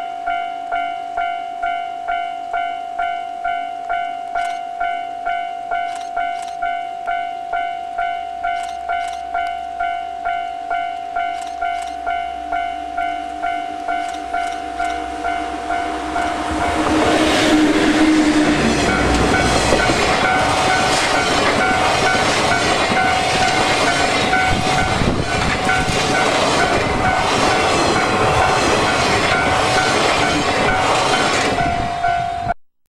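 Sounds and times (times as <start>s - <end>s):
level crossing electronic bell: 0.0s - 16.8s
train wheels clattering over rail joints: 8.5s - 9.5s, 11.3s - 12.2s, 18.0s - 31.8s.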